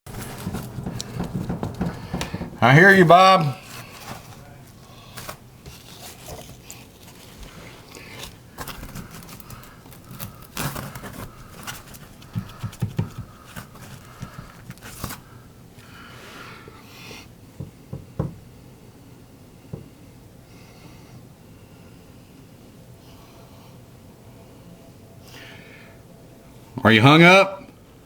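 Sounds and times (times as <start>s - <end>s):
wire scraping in wall cavity: 0.1s - 15.1s
light knocks: 0.2s - 2.6s.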